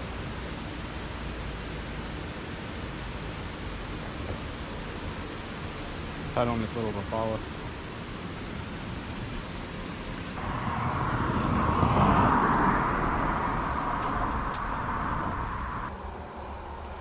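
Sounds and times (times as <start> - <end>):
vehicle passing by: 10.4 - 16.0.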